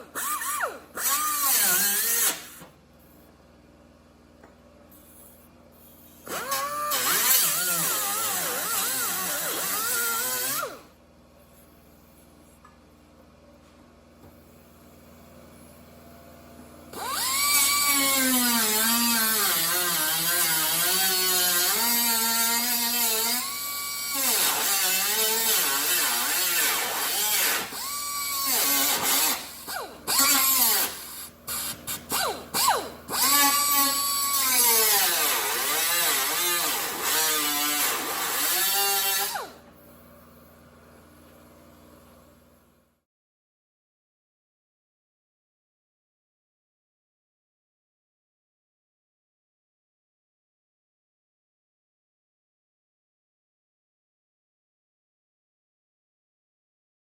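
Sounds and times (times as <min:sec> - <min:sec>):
power tool working sheet metal: 0:00.0 - 0:02.7, 0:06.2 - 0:10.9, 0:16.9 - 0:39.7.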